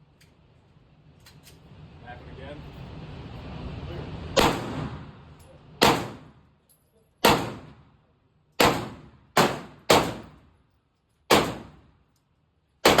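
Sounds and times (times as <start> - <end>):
pistol shots with echo: 4.4 - 5.0, 5.8 - 6.3, 7.2 - 7.8, 8.6 - 10.4, 11.3 - 11.8.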